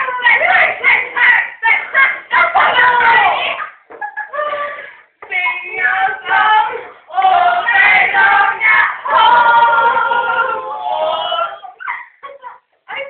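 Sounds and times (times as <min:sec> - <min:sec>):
group of voices singing: 0:05.2 - 0:11.8.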